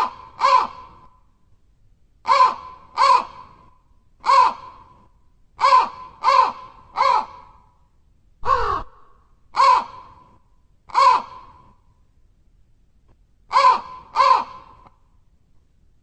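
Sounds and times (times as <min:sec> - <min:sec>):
crow cawing: 0:00.0 - 0:01.0, 0:02.3 - 0:03.6, 0:04.2 - 0:04.9, 0:05.6 - 0:07.6, 0:08.4 - 0:10.3, 0:10.9 - 0:11.6, 0:13.5 - 0:14.9.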